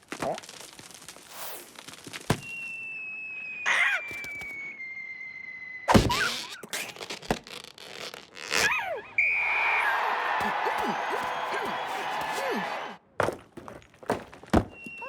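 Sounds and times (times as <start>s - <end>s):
whistle sliding down in pitch: 2.4s - 6.6s, 9.2s - 10.1s
squeaky cartoon vocal noises: 3.7s - 4.5s, 5.9s - 9.2s.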